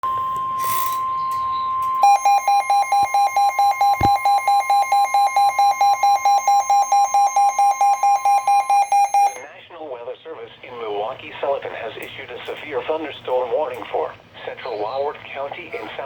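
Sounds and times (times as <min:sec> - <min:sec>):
rapid electronic alarm beeping: 0:00.0 - 0:09.4
steady single-pitch alert tone: 0:00.0 - 0:09.4.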